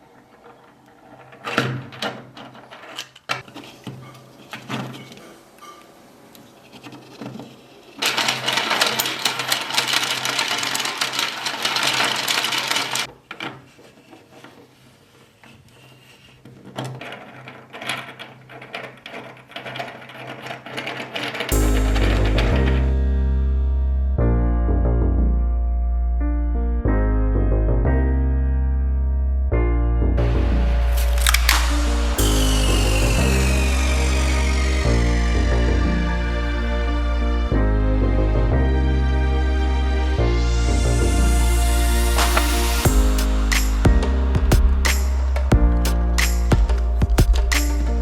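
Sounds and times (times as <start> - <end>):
rapid mechanical clatter: 7.9 - 13.1
low machine hum: 29.6 - 47.8.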